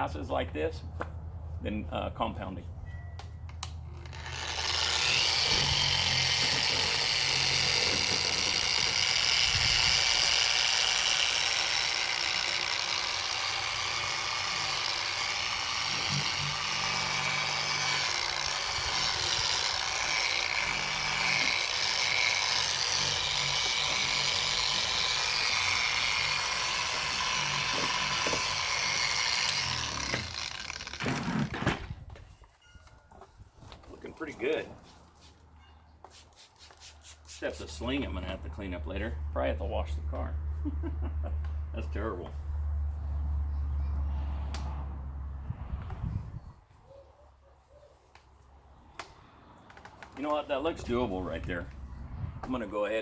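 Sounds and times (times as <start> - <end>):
power sander whirring: 3.9 - 31.8.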